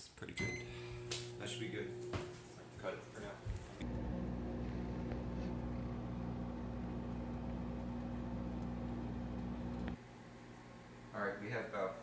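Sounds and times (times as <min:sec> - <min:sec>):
microwave oven humming: 0:00.4 - 0:11.1
microwave click: 0:03.8 - 0:10.0.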